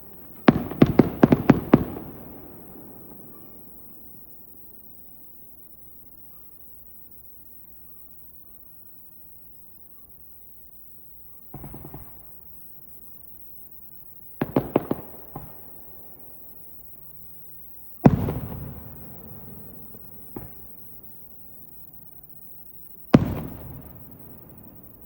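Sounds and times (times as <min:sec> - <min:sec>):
fireworks crackle: 0:00.0 - 0:05.6, 0:14.2 - 0:16.7, 0:17.5 - 0:21.9, 0:22.7 - 0:25.0.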